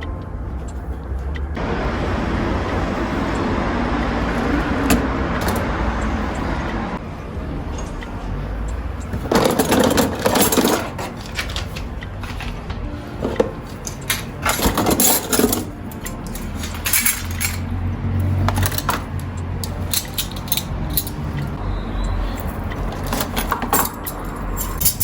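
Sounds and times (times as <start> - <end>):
rattling: 7.8 - 21.6, 22.4 - 25.0
hard objects clinking: 9.1 - 21.5, 22.3 - 25.0.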